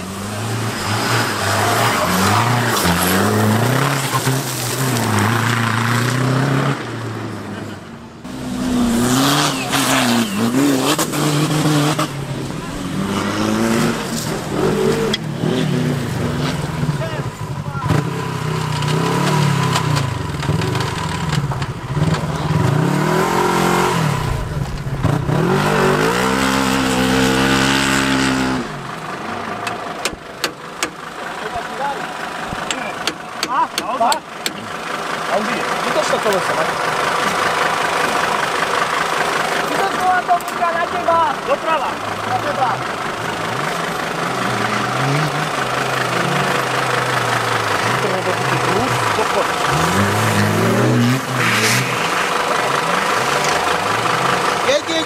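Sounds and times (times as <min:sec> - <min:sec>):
off-road vehicle engine revving: 0:00.0 - 0:55.0.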